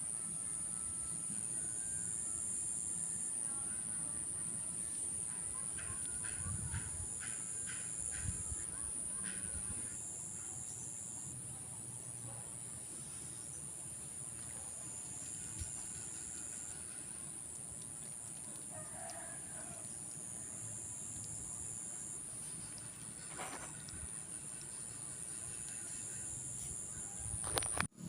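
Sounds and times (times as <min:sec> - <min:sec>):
high-pitched insect buzz: 0:00.0 - 0:11.3, 0:14.9 - 0:17.5
faint rooster crow: 0:00.2 - 0:02.5, 0:18.6 - 0:20.8, 0:26.9 - 0:27.8.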